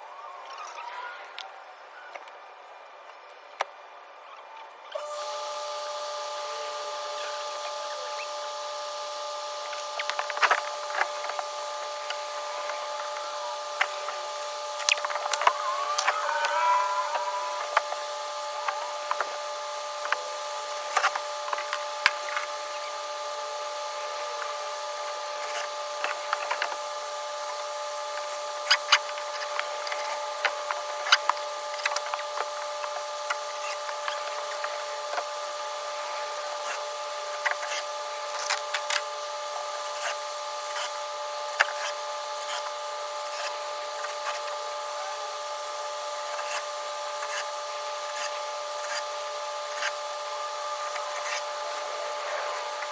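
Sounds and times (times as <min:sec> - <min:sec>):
steady high hum: 0:00.0 - 0:52.9.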